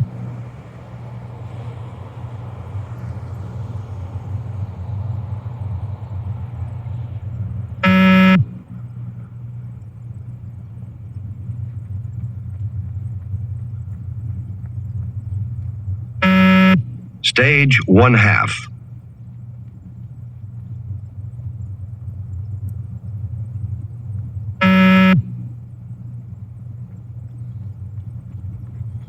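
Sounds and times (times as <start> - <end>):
steady low hum: 0.0 - 29.0
loud buzzy electronic beeps: 7.8 - 8.5, 16.2 - 18.7, 24.6 - 25.3.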